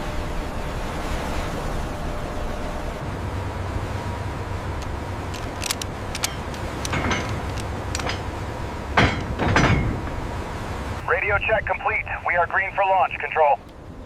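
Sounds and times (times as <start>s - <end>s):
ship engine rumble: 0.0s - 14.0s
sharp clicks and knocks: 4.8s - 8.3s, 9.0s - 10.1s.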